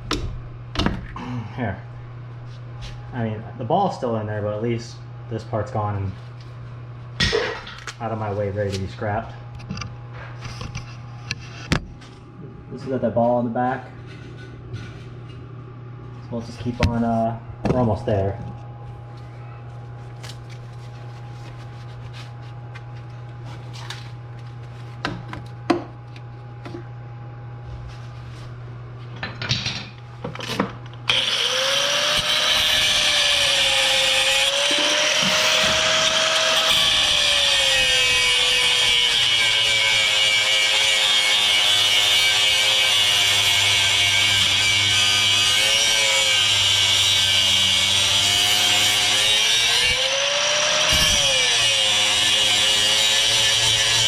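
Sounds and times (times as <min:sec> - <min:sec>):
power tool cutting metal: 0:31.1 - 0:54.0.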